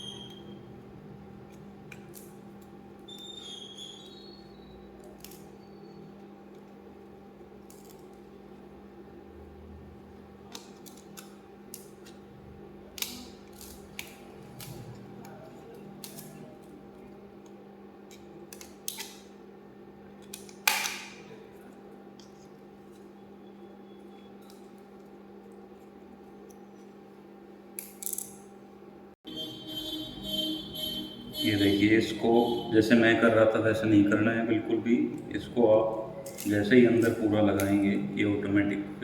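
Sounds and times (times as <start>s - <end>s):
steady low hum: 28.4s - 39.0s.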